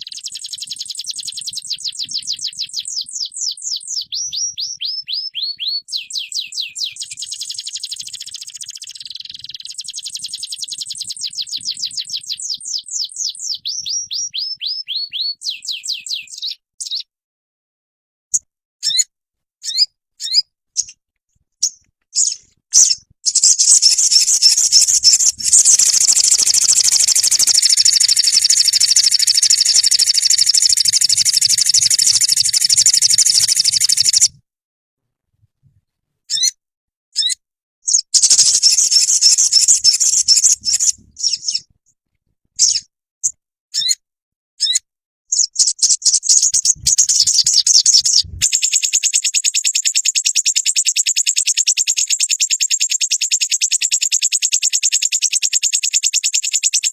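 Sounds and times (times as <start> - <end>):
bird chirps and trills: 0.0 - 17.1, 18.8 - 21.0, 21.6 - 34.3, 36.3 - 36.6, 37.2 - 41.7, 42.6 - 42.9, 43.8 - 44.0, 44.6 - 56.9.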